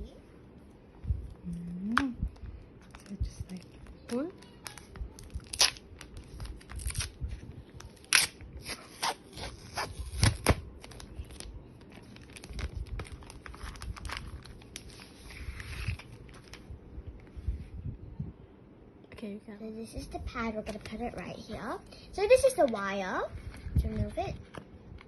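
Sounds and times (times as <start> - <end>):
packaging crinkling with snaps: 2.8 - 16.6.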